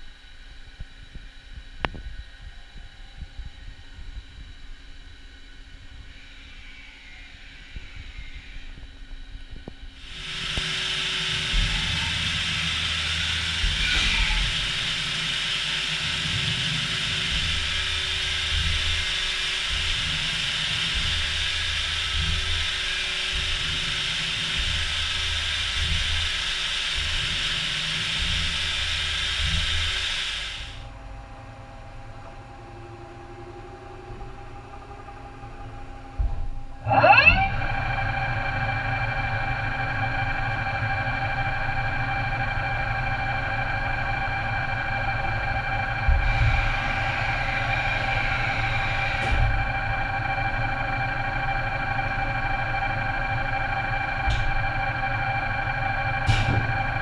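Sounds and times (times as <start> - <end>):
low machine rumble: 0.0 - 57.0
machine hum: 0.0 - 57.0
lathe hissing: 10.0 - 31.1, 36.7 - 57.0.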